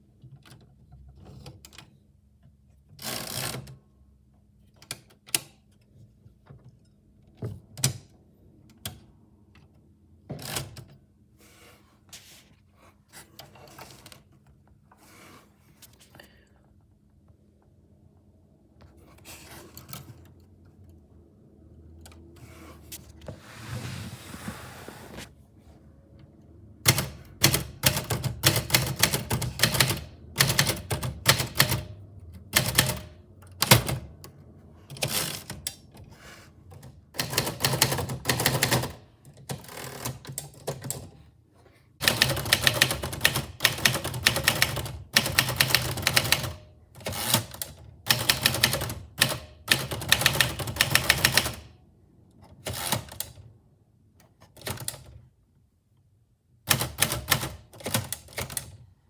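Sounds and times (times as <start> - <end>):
soft brushing noise: 23.0 - 25.8
typewriter keys clacking: 26.9 - 34.1, 42.0 - 51.7, 56.7 - 58.7.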